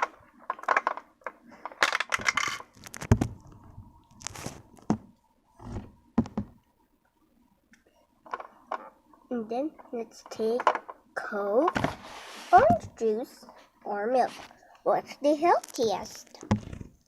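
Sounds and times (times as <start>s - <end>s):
packaging crackling rustles: 2.5s - 5.0s
dull knocks: 4.9s - 6.6s
plastic toy pieces clicking: 10.5s - 11.0s.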